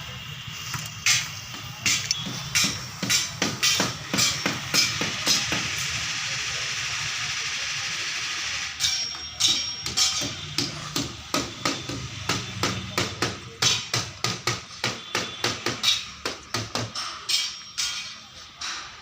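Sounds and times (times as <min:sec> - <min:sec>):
hammer striking metal: 0:01.0 - 0:05.8, 0:08.8 - 0:19.0.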